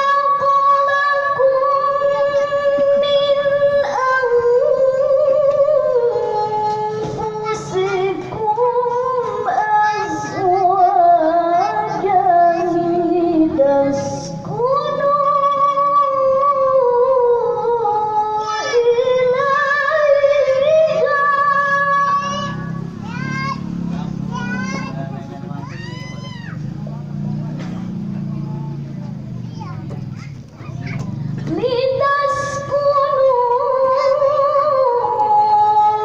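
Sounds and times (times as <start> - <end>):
woman chanting melodically: 0.0 - 23.0, 31.4 - 36.0.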